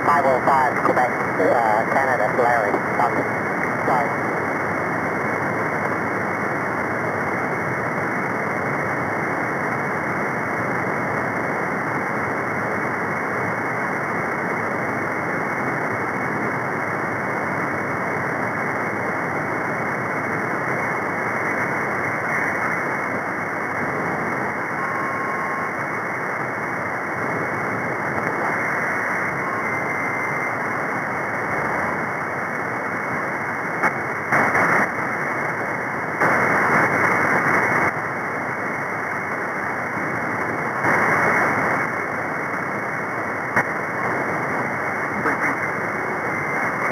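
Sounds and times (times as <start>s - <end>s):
radio noise bursts: 0.0s - 4.4s, 23.8s - 26.1s, 27.2s - 31.7s, 33.8s - 38.0s, 40.0s - 46.9s
radio static hiss: 0.0s - 46.9s.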